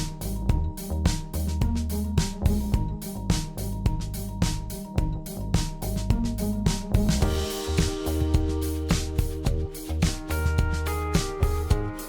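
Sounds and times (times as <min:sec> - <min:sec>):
background music with drum beat: 0:00.0 - 0:12.0.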